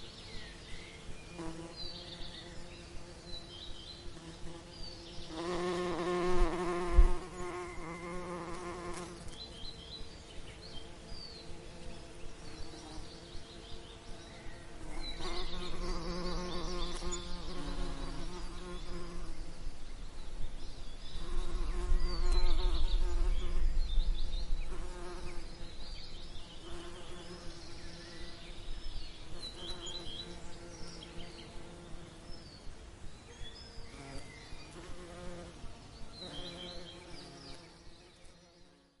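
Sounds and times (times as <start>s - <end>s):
birds chirping: 0.0s - 38.7s
honeybees buzzing: 1.4s - 9.9s, 10.6s - 19.6s, 24.6s - 28.6s.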